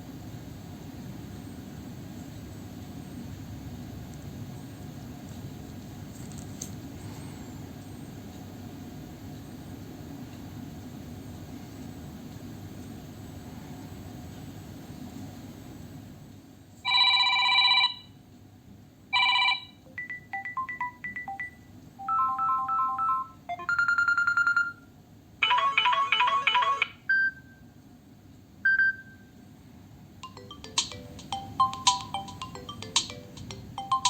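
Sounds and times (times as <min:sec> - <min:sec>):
phone ringtone melodies: 0:19.2 - 0:27.4, 0:30.2 - 0:34.0
high pings: 0:30.2 - 0:34.0.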